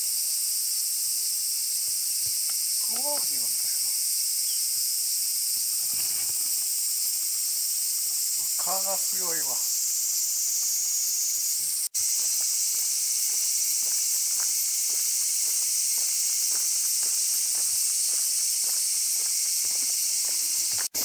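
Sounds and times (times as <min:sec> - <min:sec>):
cicadas shrilling: 0:00.0 - 0:21.0
faint footsteps: 0:12.0 - 0:21.0.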